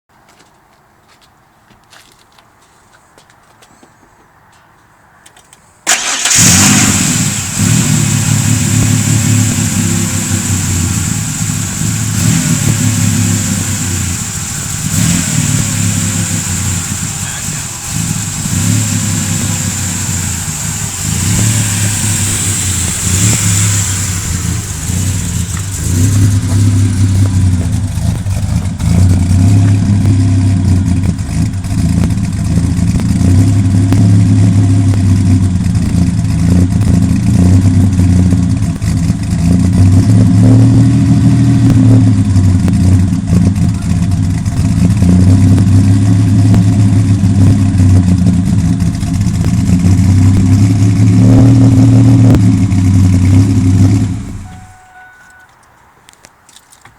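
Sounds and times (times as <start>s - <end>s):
misfiring engine revving: 5.9s - 54.6s
high hiss: 7.2s - 27.2s.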